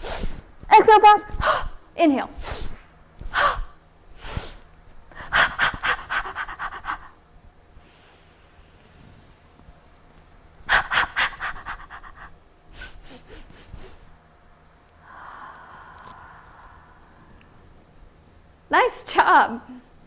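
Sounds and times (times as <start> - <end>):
woman breathing rapidly: 0.0 - 0.7, 1.3 - 9.8, 10.6 - 14.3, 15.0 - 17.9
soft breath hiss: 0.0 - 20.0.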